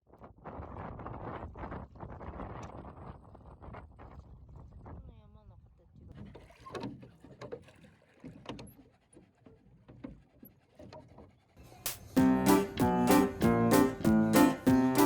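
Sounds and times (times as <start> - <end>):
knocks and splashes on water: 6.1 - 9.0
loud piano music: 12.1 - 15.0.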